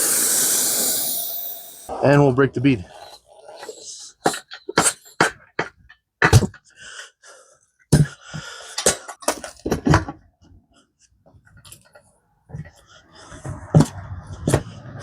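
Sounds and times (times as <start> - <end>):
hiss bursts: 0.0 - 1.9.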